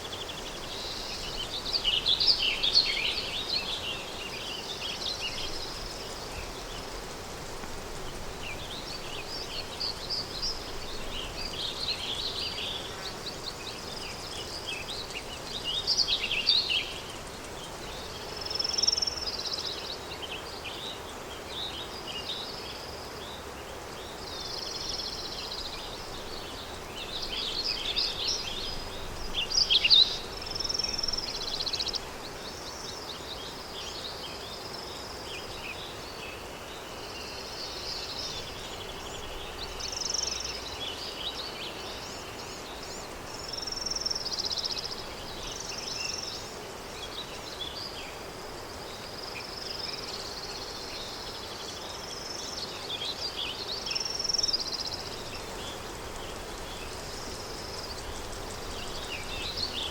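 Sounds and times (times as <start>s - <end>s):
songbirds chirping and trilling: 0.0s - 59.9s
soft wind rush: 54.2s - 59.9s.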